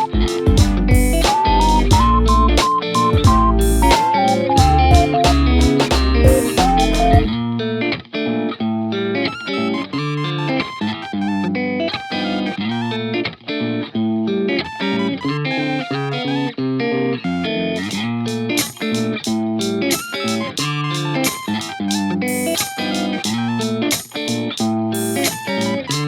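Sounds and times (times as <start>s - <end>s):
bass line: 0.0s - 7.4s
electric guitar plucked notes: 0.0s - 26.0s.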